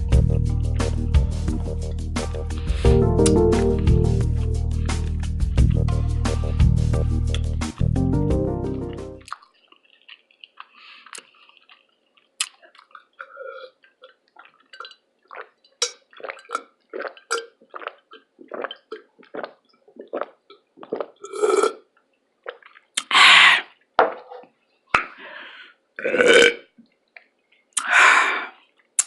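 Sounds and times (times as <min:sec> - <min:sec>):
wet chewing and lip-smacking: 0:09.2 - 0:21.3, 0:22.4 - 0:23.2
loud burp: 0:26.0 - 0:26.7.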